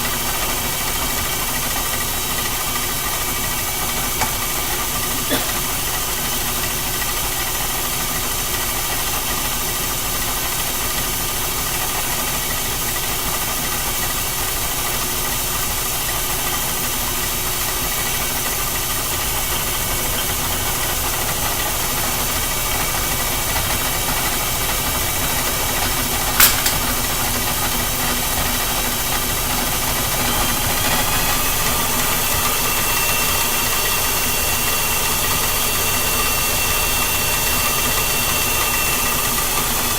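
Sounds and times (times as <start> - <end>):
lathe running: 0.0 - 39.9
sharp click: 26.4 - 27.0.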